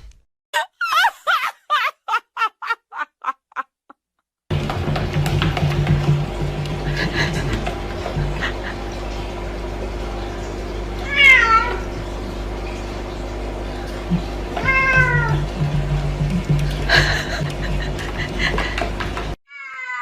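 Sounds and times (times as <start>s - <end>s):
cat meowing: 11.0s - 11.8s, 14.6s - 15.4s, 19.5s - 20.0s.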